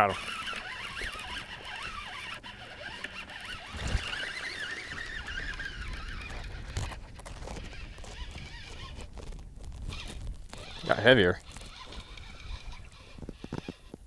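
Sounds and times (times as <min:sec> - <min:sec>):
fishing reel whirring: 0:00.0 - 0:14.0.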